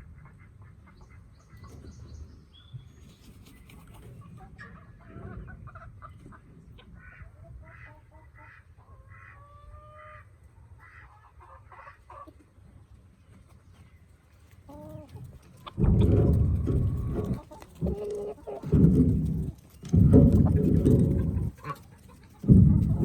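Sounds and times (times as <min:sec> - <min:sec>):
chickens clucking: 0:00.0 - 0:23.0
steady low rumble: 0:15.6 - 0:23.0.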